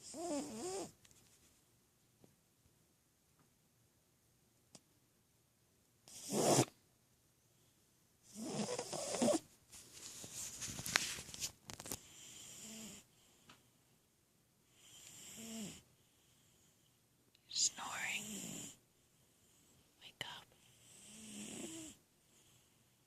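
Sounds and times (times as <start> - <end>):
cat snoring: 0.0 - 1.0, 6.0 - 6.8, 8.2 - 9.4, 12.0 - 13.4, 14.7 - 15.9, 17.8 - 18.8, 20.6 - 22.7.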